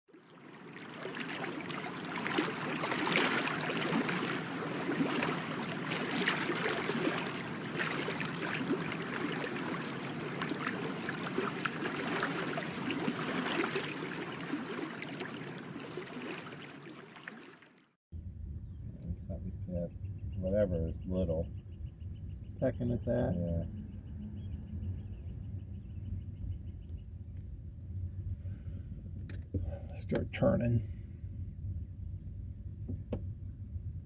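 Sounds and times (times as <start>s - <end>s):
water lapping and splashing: 0.1s - 18.0s.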